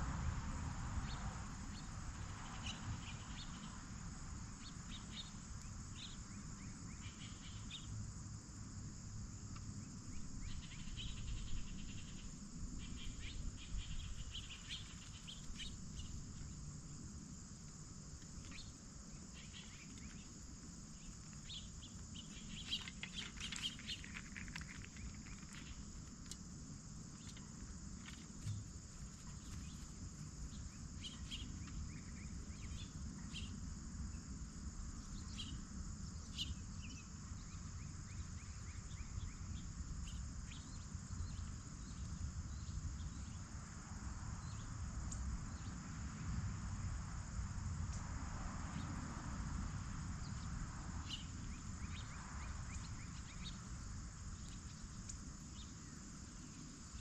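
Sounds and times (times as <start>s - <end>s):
crickets chirping: 0.0s - 57.0s
bird chirps: 18.4s - 20.3s, 21.0s - 25.8s, 30.5s - 33.6s.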